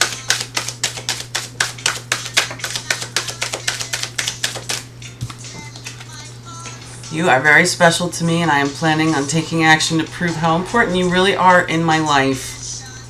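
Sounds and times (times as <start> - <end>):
cards being shuffled: 0.0 - 6.2.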